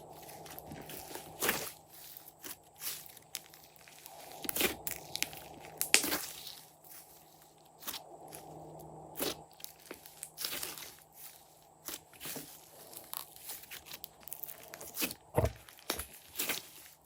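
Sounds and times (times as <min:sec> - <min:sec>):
thump: 0:15.4 - 0:15.6.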